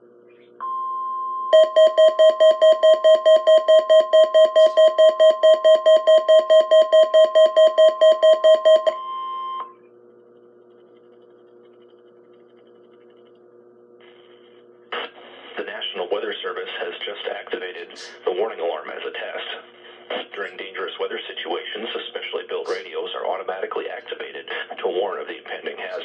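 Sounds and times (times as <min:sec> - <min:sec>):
steady alarm tone: 0:00.6 - 0:09.8
weather radio beeper pulsing: 0:01.6 - 0:09.6.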